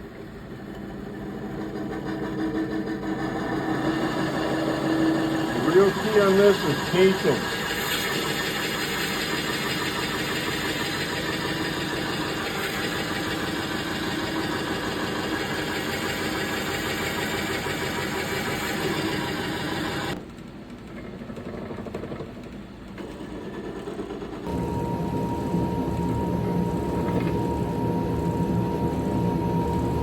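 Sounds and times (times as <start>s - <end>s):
wood lathe running: 0.7s - 20.2s.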